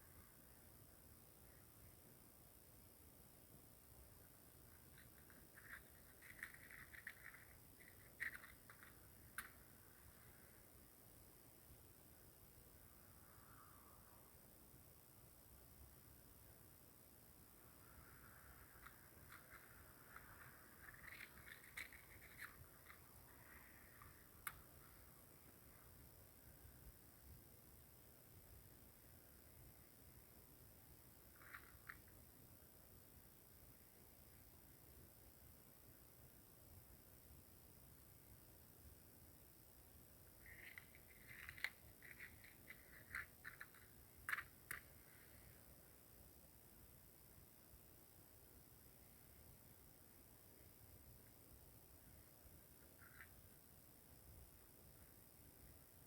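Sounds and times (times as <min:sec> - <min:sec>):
faint small clicks and rustles: 0:03.5 - 0:11.8, 0:17.5 - 0:32.9, 0:39.6 - 0:47.4, 0:48.7 - 0:56.0
sharp clicks: 0:04.7 - 0:10.0.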